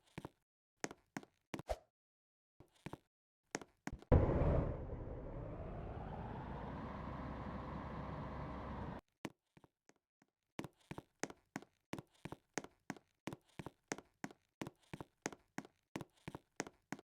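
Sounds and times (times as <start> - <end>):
heavy machine rumbling: 4.1 - 9.0.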